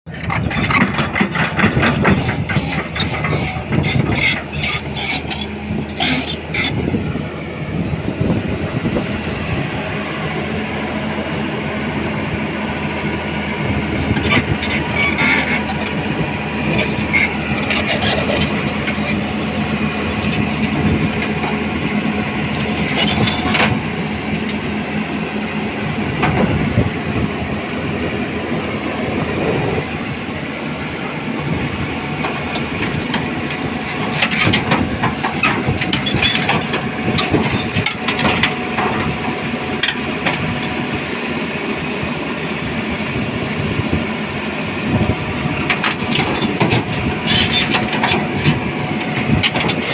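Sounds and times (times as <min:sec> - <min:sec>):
clanks and knocks: 0:00.1 - 0:06.7, 0:33.9 - 0:40.5
diesel engine drone: 0:00.1 - 0:49.9.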